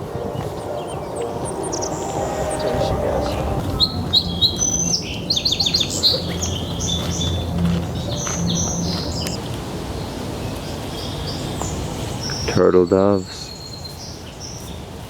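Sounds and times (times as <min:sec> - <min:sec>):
dove cooing: 0:00.0 - 0:08.4
songbirds chirping: 0:00.0 - 0:15.0.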